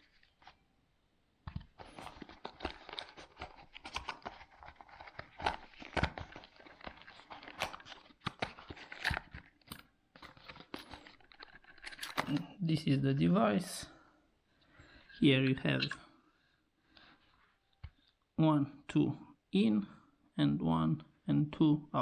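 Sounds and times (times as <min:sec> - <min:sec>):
packaging crackling and rustling: 0:01.5 - 0:12.4.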